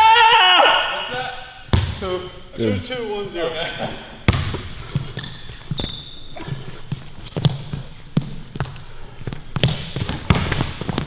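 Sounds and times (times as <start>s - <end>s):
basketball bouncing: 1.7s - 2.0s, 4.2s - 11.0s
sneakers squeaking on floor: 3.8s - 11.0s.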